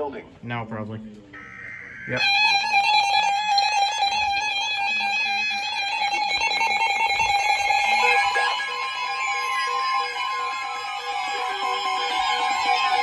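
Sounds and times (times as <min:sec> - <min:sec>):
rapidly pulsing electronic beep: 0:01.4 - 0:04.3
steady electronic tone: 0:01.4 - 0:04.6.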